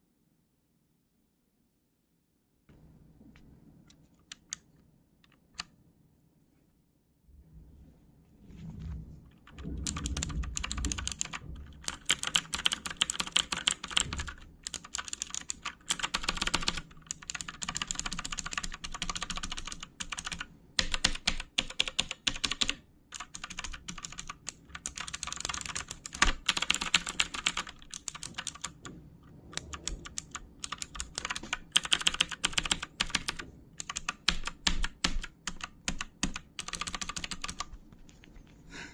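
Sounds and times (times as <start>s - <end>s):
clicky mechanical keyboard typing: 3.9s - 5.7s, 9.3s - 28.9s, 29.5s - 37.8s.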